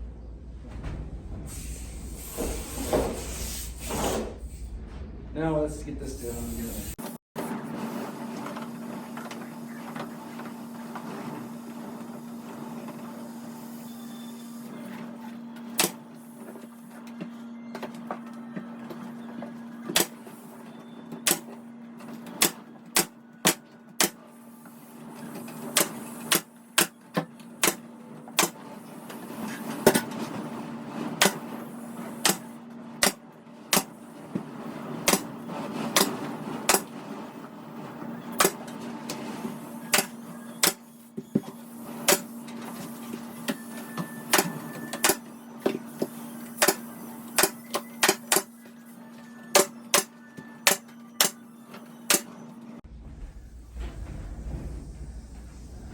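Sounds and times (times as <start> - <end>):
steady low hum: 0.0 - 7.2, 52.6 - 55.9.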